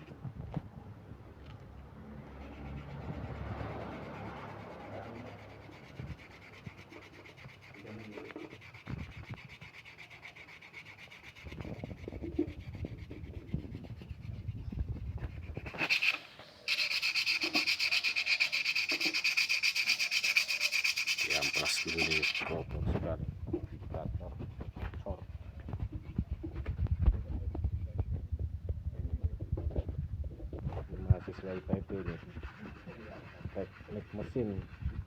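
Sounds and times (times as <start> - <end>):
fast rasping of sandpaper: 2.2 - 22.8, 30.9 - 35.0
sandpaper scraping and knocking: 2.3 - 22.9, 30.6 - 35.0.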